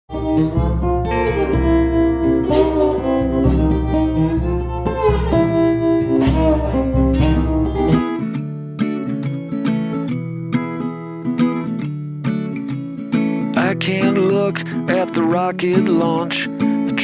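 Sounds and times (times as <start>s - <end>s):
deep bass notes: 0.1s - 8.0s
guitar: 0.1s - 17.0s.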